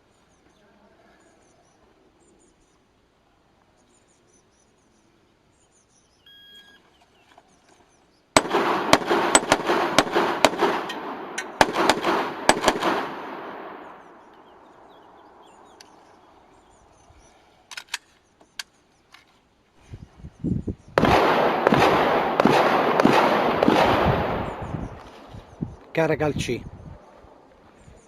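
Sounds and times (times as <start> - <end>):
pistol shots: 8.4 - 15.8, 21.0 - 25.3.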